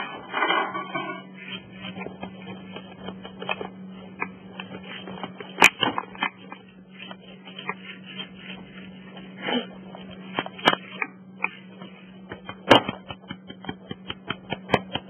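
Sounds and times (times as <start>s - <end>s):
steady low hum: 0.0s - 15.0s
small objects clicking and tapping: 12.3s - 15.0s.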